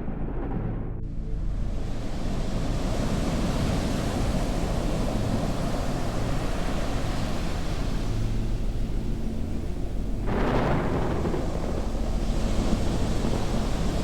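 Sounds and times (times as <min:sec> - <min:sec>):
deep rumble: 0:00.0 - 0:02.7, 0:08.0 - 0:14.0
steady wind-like rushing: 0:00.0 - 0:14.0.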